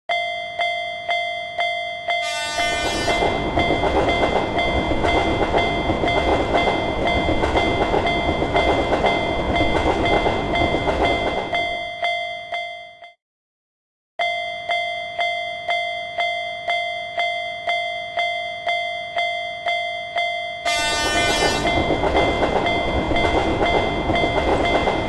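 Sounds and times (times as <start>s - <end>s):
railroad crossing bell ringing: 0.1s - 13.2s, 14.2s - 25.0s
train horn: 2.2s - 3.4s, 20.6s - 21.8s
freight train rushing and rattling: 2.2s - 11.8s, 20.7s - 25.0s.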